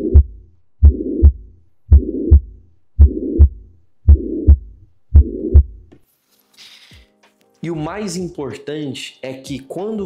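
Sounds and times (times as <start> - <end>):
high-pitched heart murmur: 0.0 - 5.8
heartbeat through stethoscope: 0.0 - 5.9.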